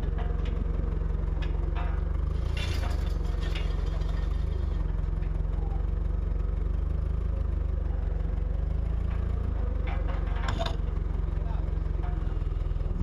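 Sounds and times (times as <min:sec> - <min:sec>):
low engine drone: 0:00.0 - 0:13.0.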